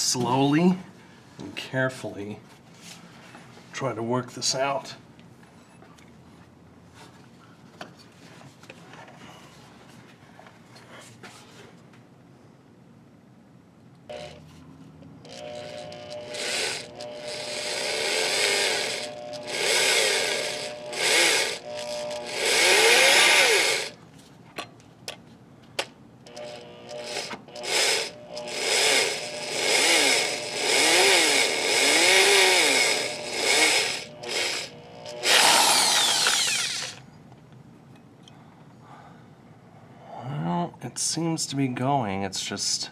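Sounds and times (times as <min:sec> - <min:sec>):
electric drill drilling metal: 0:15.3 - 0:24.0, 0:26.3 - 0:37.0.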